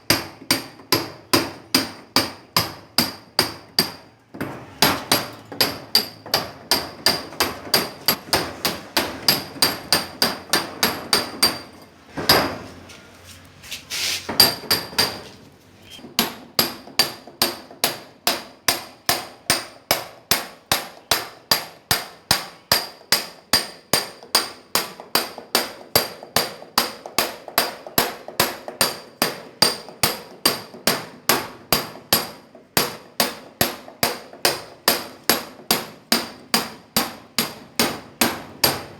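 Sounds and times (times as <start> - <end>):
hammer striking steel chisel: 0.1 - 12.6, 14.3 - 38.9.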